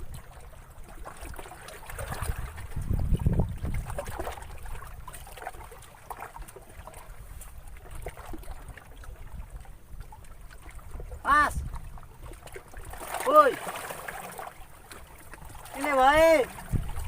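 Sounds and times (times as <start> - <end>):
water lapping and trickling: 0.0 - 17.0.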